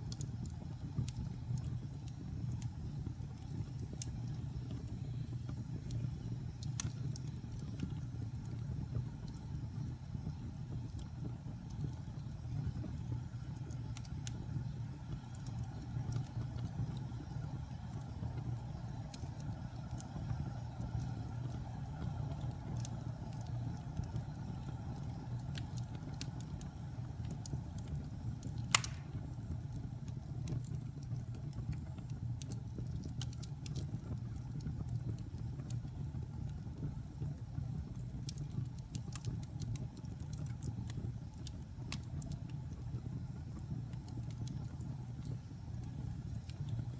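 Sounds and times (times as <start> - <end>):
fire flames rumbling: 0.0 - 46.9
wood fire crackling: 0.0 - 46.9
loud fire pop: 28.7 - 29.2.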